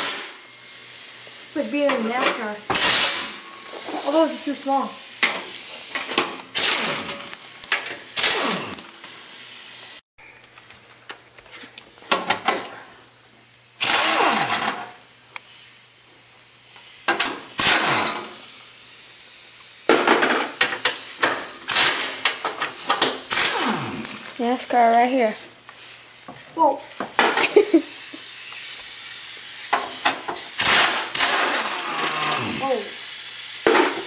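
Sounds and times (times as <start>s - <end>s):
power drill whirring: 2.7s - 4.3s, 6.5s - 9.1s, 13.8s - 14.9s, 17.6s - 18.4s, 23.3s - 24.2s, 30.6s - 33.0s.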